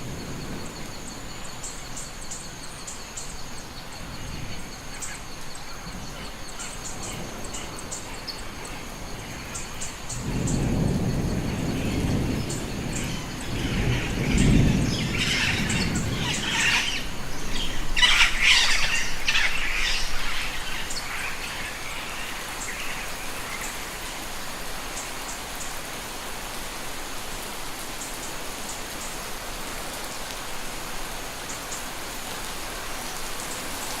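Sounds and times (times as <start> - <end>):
low thunder rumble: 0.0 - 1.6, 3.9 - 23.7
steady rain: 0.0 - 34.0
bird calls: 0.4 - 25.8.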